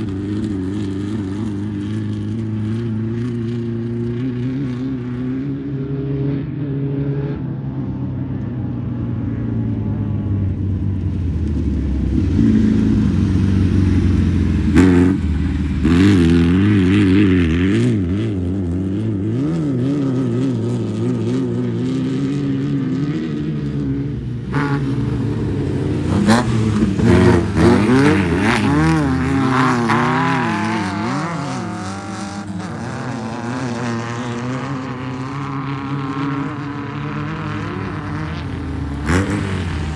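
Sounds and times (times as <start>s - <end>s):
race car engine revving: 11.0s - 39.9s.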